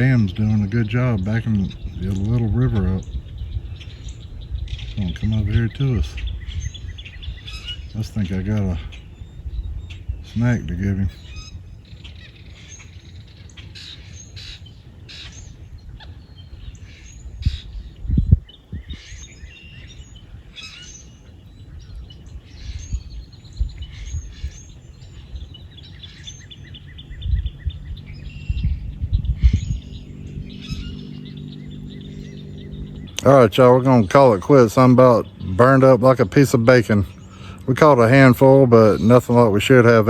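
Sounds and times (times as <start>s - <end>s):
songbirds chirping: 0.0s - 40.0s
loud low thumps: 26.6s - 34.0s.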